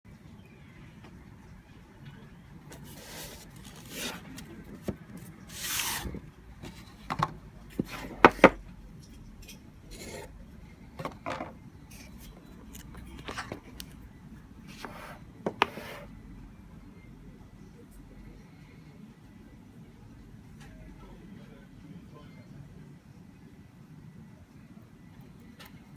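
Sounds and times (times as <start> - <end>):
packaging rubbing and scraping: 2.7 - 7.1.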